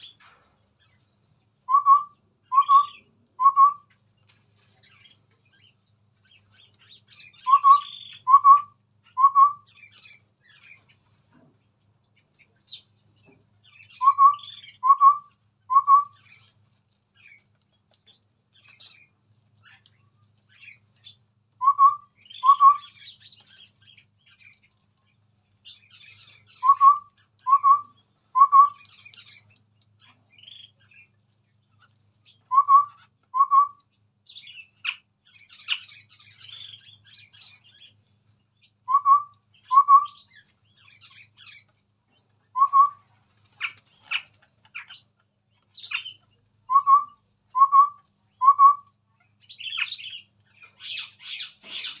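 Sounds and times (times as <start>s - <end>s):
bird whistled notes: 1.7s - 3.8s, 7.4s - 9.7s, 13.9s - 16.4s, 21.6s - 23.0s, 26.5s - 28.9s, 32.5s - 33.8s, 38.9s - 40.3s, 42.6s - 43.0s, 46.7s - 48.9s.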